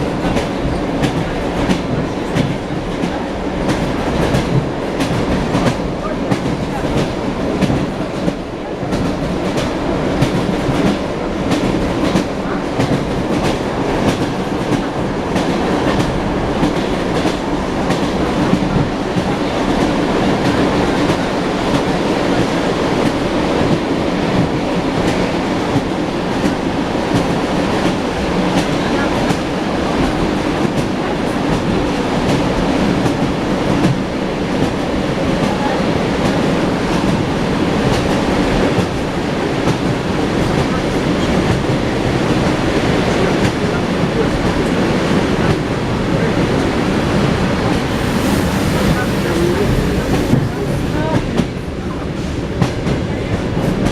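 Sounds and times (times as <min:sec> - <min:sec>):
train running rumble: 0:00.0 - 0:53.9.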